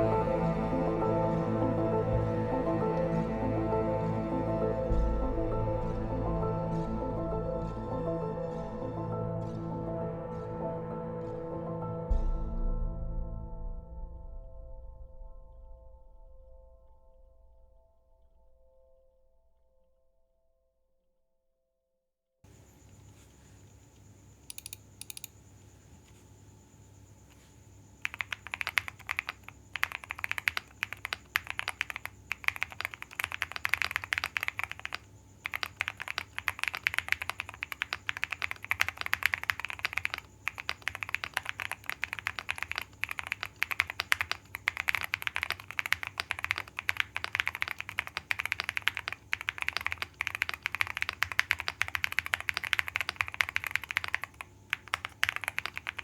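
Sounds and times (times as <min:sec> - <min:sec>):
faint clicks: 0:23.7 - 0:25.4
fast typing on mechanical keyboard: 0:24.5 - 0:25.3, 0:28.0 - 0:56.0.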